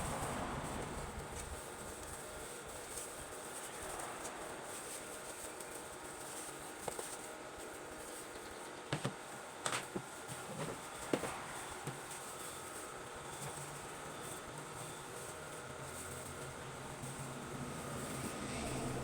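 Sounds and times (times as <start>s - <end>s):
steady background hiss: 0.0s - 8.3s.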